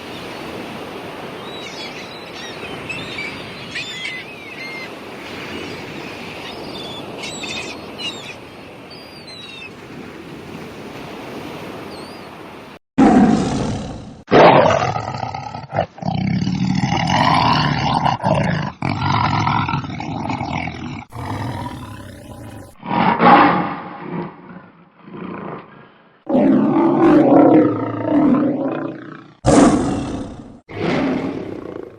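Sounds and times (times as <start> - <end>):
lion roaring and grunting: 13.0 - 31.9.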